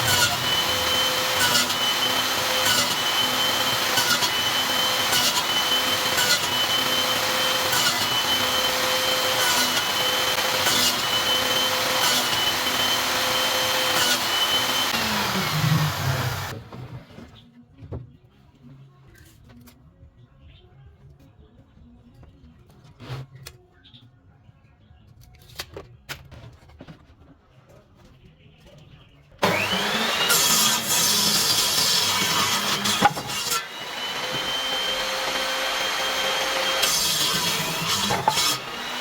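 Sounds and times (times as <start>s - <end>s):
electric power tool running: 0.0s - 16.6s, 29.4s - 39.0s.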